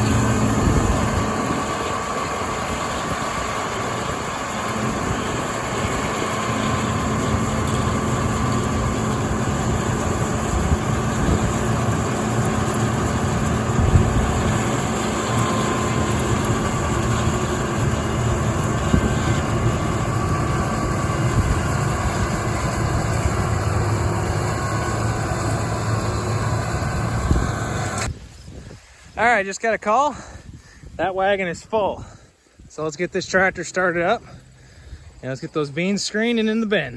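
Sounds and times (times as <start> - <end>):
combine harvester machinery drone: 0.0 - 28.1.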